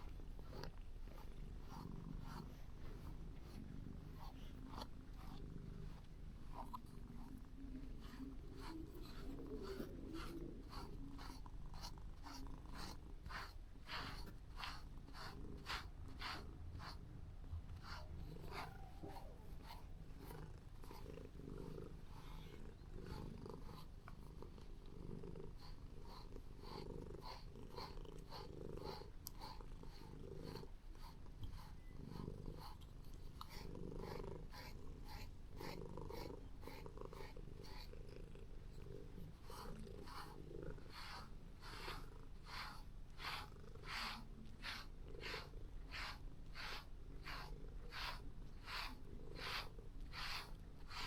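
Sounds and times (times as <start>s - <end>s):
cat purring: 0.0s - 51.0s.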